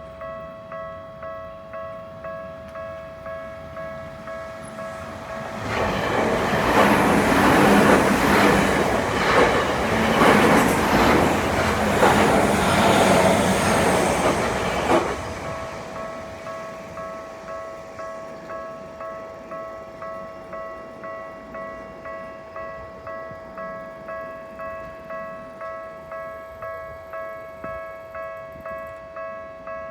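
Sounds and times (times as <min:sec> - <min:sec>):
level crossing warning bells: 0:00.0 - 0:29.9
train wheels clacking: 0:04.6 - 0:18.5.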